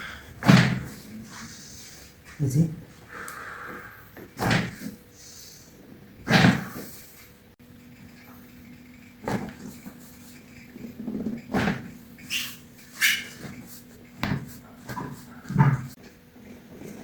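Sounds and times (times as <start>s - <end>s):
body knocks and thuds on table: 0.4s - 1.0s, 4.4s - 4.8s, 11.5s - 12.0s, 14.2s - 15.9s.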